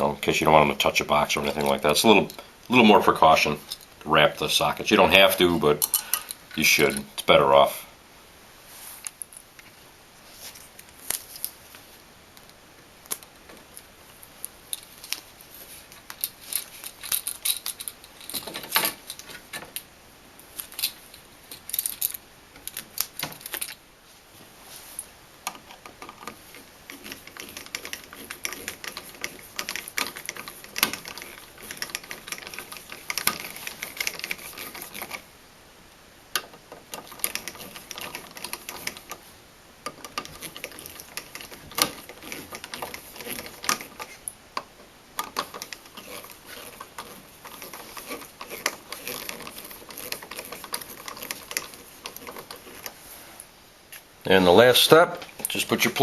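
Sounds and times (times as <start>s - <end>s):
electrical outlets clicking and rattling: 16.2s - 19.8s, 25.5s - 35.2s, 36.4s - 53.0s
electrical tape being wrapped: 26.1s - 35.3s, 39.9s - 44.3s, 45.2s - 53.0s.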